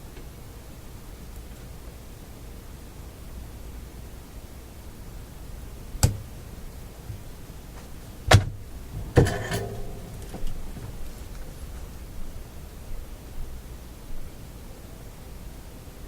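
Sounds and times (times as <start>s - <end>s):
low steady hum: 0.0s - 16.0s
metal tools knocking on workbench: 8.9s - 11.4s.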